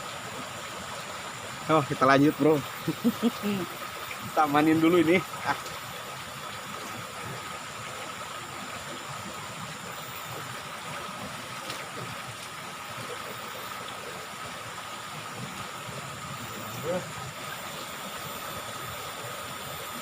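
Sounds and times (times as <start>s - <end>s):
river water flowing: 0.0s - 20.0s.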